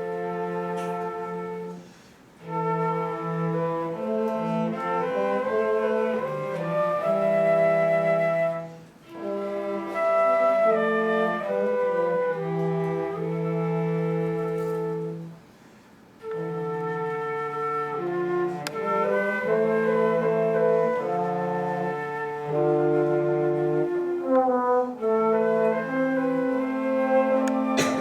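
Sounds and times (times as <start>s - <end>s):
slow instrumental melody: 26.6s - 28.0s.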